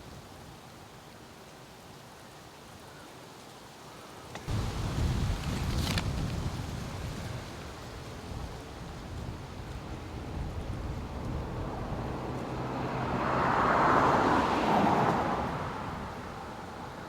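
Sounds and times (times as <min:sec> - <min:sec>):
tractor passing by: 0:09.6 - 0:16.9.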